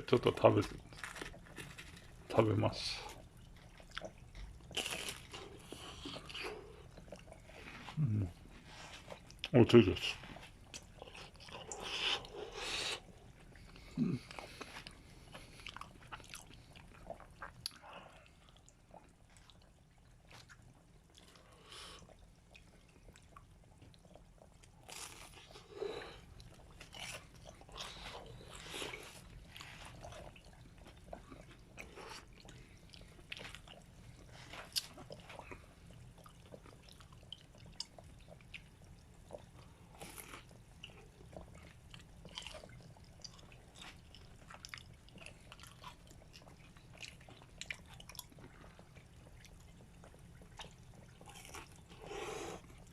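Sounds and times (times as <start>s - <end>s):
chewing and biting food: 0.5s - 2.4s, 3.0s - 9.5s, 10.1s - 52.9s
small crunches: 0.7s - 2.1s.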